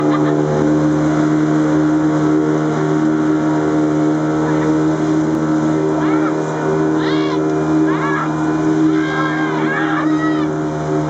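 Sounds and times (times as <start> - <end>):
outboard motor droning: 0.0 - 11.0.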